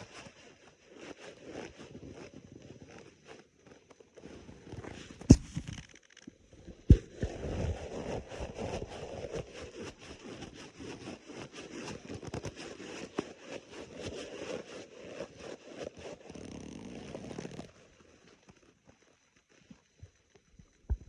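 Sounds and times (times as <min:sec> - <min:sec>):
stomach growling: 0:20.6 - 0:21.0.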